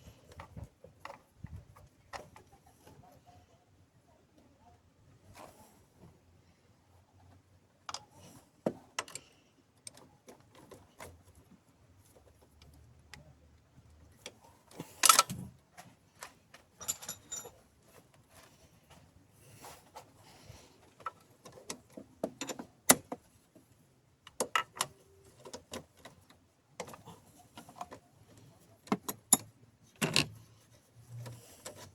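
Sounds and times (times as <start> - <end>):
hand tools clinking on metal: 16.8 - 17.6.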